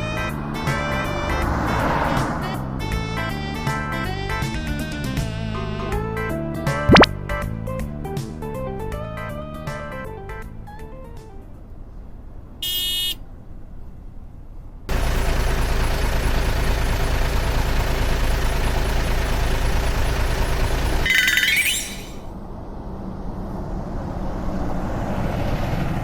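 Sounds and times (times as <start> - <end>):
vehicle engine rumble with road noise: 0.0 - 6.3, 7.9 - 21.4, 22.1 - 26.0
higher pitched tone: 6.9 - 7.1, 21.0 - 22.3
short electronic beep: 6.9 - 7.1, 21.0 - 22.3.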